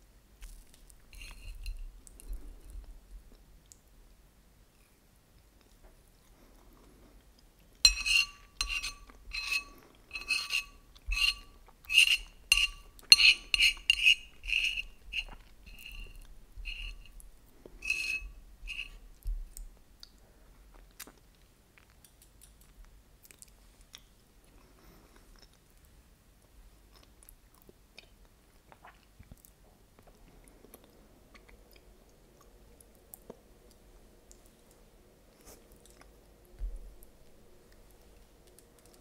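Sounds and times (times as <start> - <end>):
cutlery clinking against a dish: 1.2 - 2.4, 7.9 - 17.2, 17.8 - 19.0.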